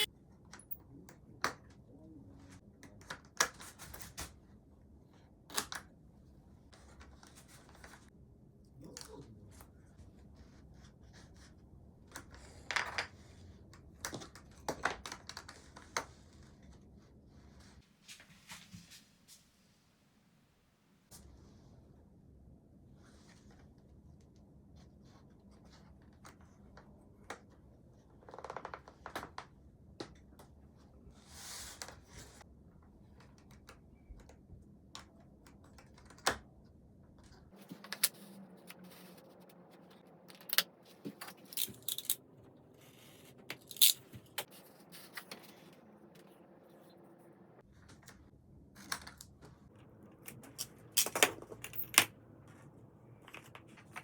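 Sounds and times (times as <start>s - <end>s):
small parts and tools handled: 37.6s - 46.3s, 50.1s - 52.6s.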